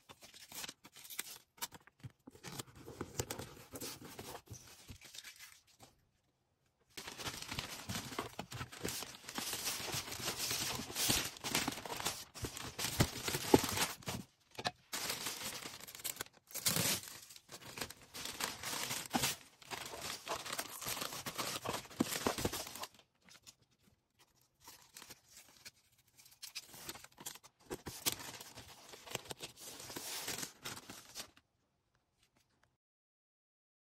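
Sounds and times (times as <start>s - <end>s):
packaging crinkling and tearing: 7.0s - 23.5s, 24.6s - 31.4s.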